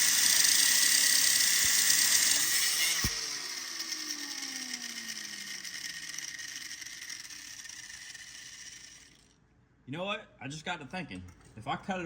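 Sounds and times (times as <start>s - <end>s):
cut-off wheel grinding bolt: 0.0s - 9.2s.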